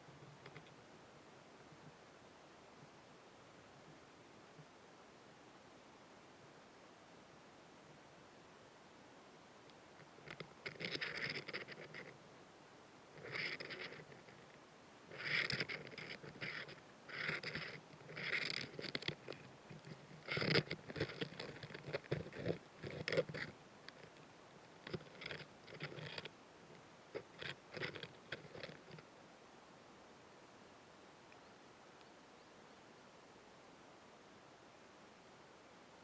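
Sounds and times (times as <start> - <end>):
insect chewing crunching: 10.2 - 12.1, 13.2 - 14.4, 15.1 - 24.2, 24.8 - 26.3, 27.2 - 29.0.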